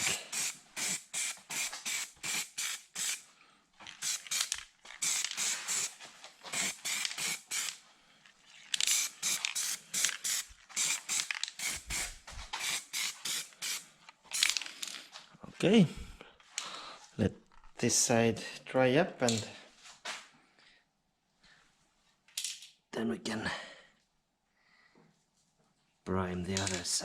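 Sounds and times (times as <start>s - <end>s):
spray can hissing: 0.0s - 3.2s, 3.9s - 7.8s, 8.8s - 14.6s.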